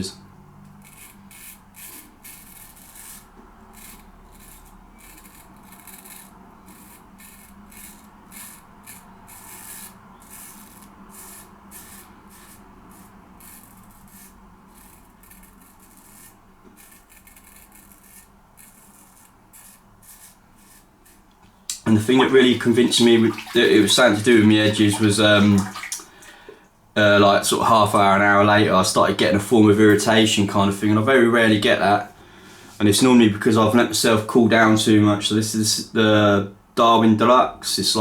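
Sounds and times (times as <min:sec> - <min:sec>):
straight razor scraping stubble: 0:00.7 - 0:21.3.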